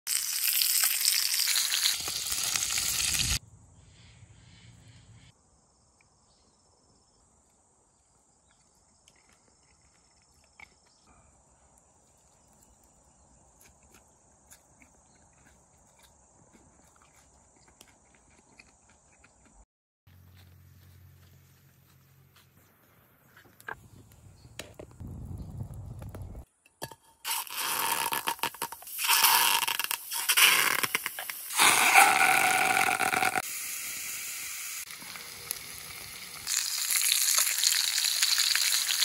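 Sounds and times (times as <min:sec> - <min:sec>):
food sizzling in a pan: 0:00.1 - 0:03.4, 0:27.3 - 0:39.0
high-pitched insect buzz: 0:27.3 - 0:39.0.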